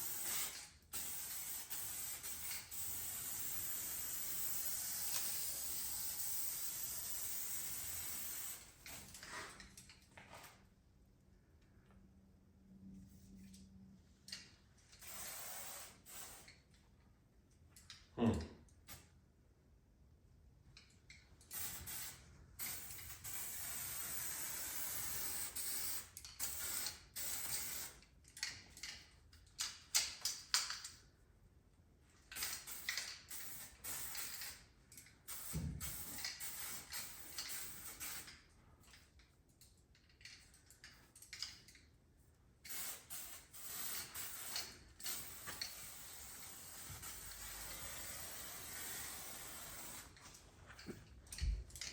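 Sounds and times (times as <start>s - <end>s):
aerosol can spraying: 42.7s - 50.2s.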